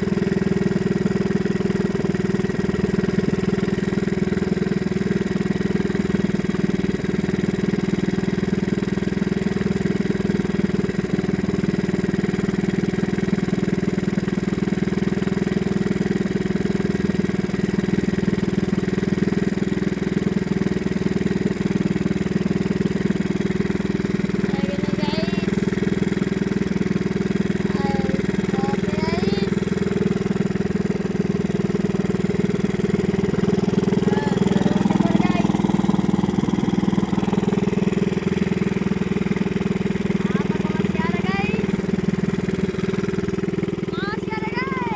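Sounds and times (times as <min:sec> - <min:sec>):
boat engine running: 0:00.0 - 0:44.9
faint voice: 0:43.9 - 0:44.9.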